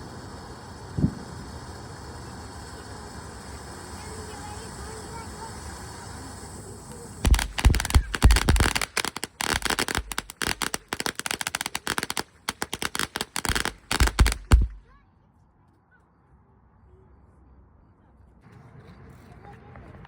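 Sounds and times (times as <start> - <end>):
fireworks bangs and crackles: 0.0 - 14.9.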